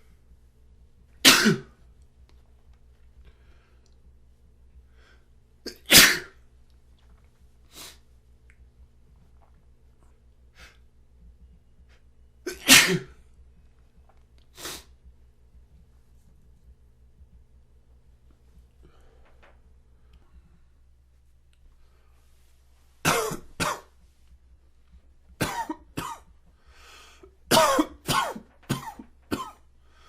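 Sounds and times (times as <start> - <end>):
man sneezing: 1.2 - 1.7, 5.7 - 6.3, 12.5 - 13.1
short sniffles: 7.7 - 8.0, 14.5 - 15.0.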